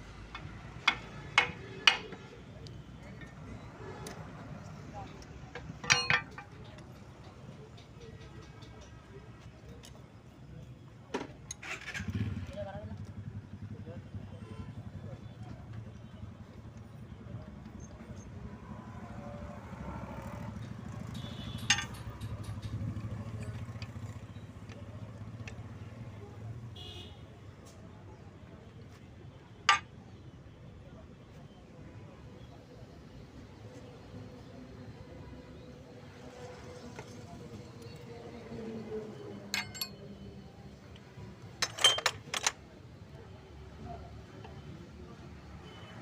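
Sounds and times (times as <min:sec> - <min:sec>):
sharp metallic clank: 0:05.6 - 0:06.5, 0:39.6 - 0:40.0
ringing metal clinks: 0:05.6 - 0:06.6, 0:21.2 - 0:22.6, 0:39.5 - 0:40.1.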